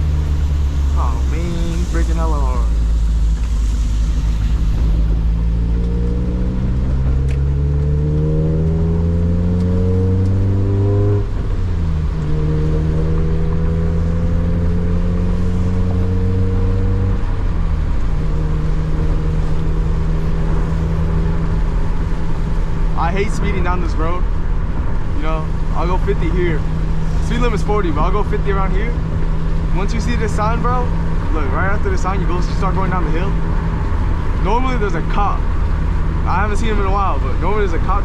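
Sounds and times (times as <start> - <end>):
car engine revving from inside: 0.0 - 21.8.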